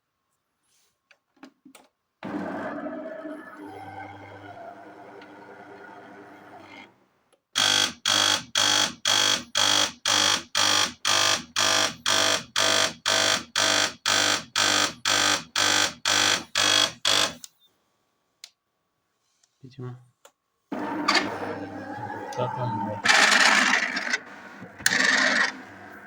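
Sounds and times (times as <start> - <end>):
coffee machine humming: 2.2 - 6.9, 20.7 - 26.0.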